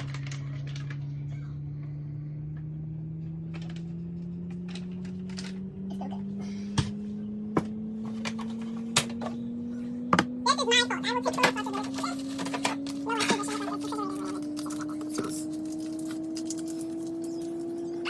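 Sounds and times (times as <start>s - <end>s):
items clicking and knocking: 0.0s - 1.1s, 3.5s - 5.7s, 7.6s - 9.4s, 11.2s - 17.9s
machine hum rising in pitch: 0.0s - 18.0s.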